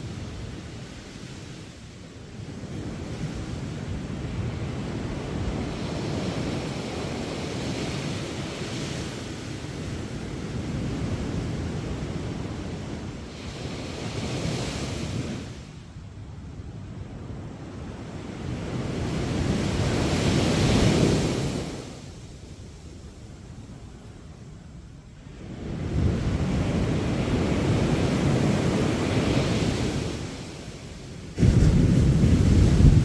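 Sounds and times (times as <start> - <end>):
waves breaking on shore: 2.6 - 15.8, 18.3 - 23.6, 25.4 - 33.0.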